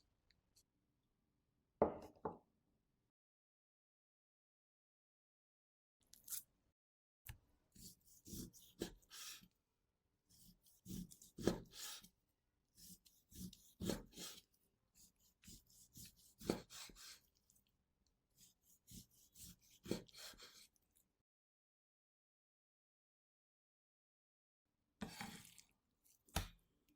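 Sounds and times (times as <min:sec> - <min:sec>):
knife cutting on wooden board: 0:07.8 - 0:09.5, 0:10.3 - 0:12.1, 0:12.8 - 0:17.3, 0:18.4 - 0:20.8, 0:26.3 - 0:26.5.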